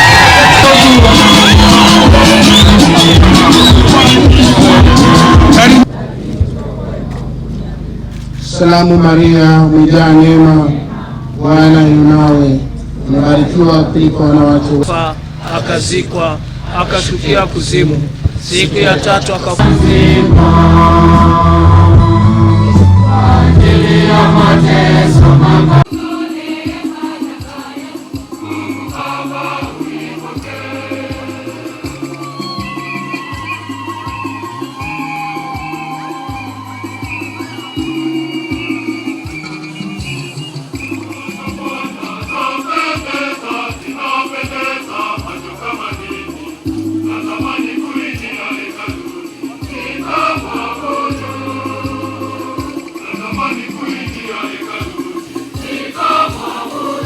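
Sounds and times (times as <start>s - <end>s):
choir singing: 0.0s - 6.2s, 18.5s - 57.0s
music with steady drumbeat: 0.0s - 6.6s, 19.5s - 57.0s.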